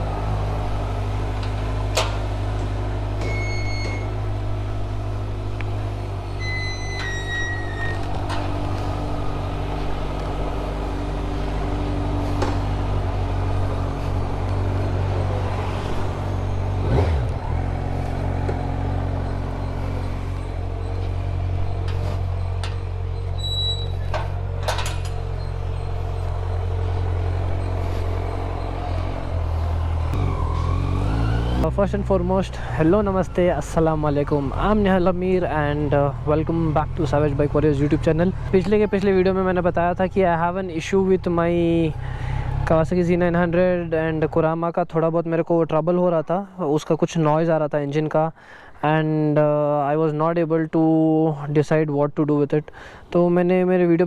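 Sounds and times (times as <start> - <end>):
traffic horn beeps: 3.2 - 4.2, 6.3 - 8.1.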